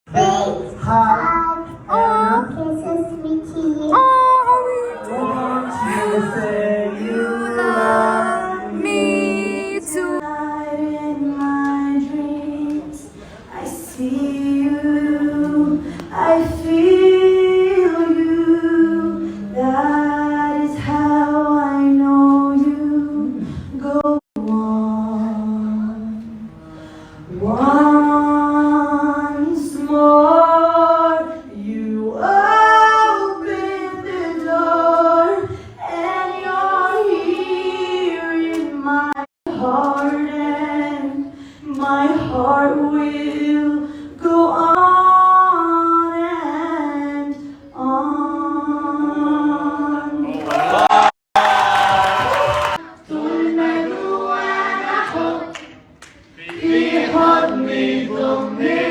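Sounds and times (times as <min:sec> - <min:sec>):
woman singing solo: 0:04.0 - 0:10.7.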